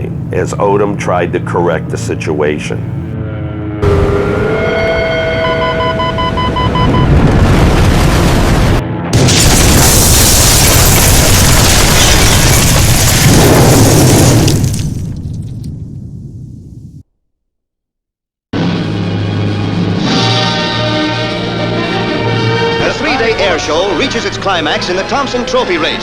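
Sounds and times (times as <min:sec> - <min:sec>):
loud explosion: 0:06.7 - 0:17.0
crash rumble: 0:06.8 - 0:17.0.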